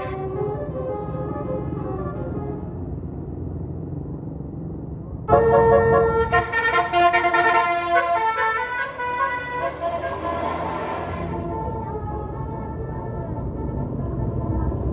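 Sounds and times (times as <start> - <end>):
bus engine rumbling: 0.0 - 14.9
musical air horn playing tune: 5.3 - 11.2.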